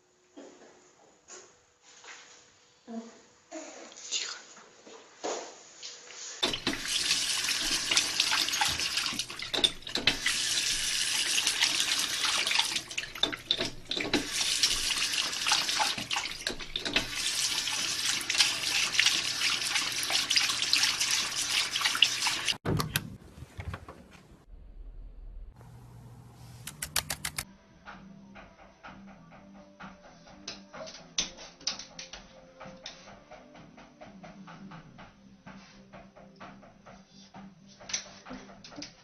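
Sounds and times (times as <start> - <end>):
water running and splashing: 6.4 - 22.6.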